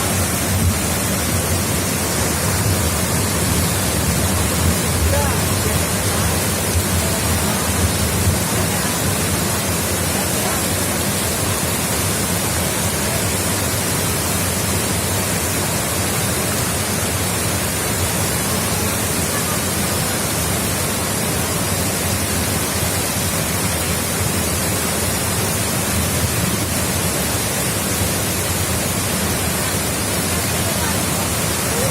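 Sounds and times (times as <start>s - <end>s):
waterfall rushing: 0.0s - 31.9s.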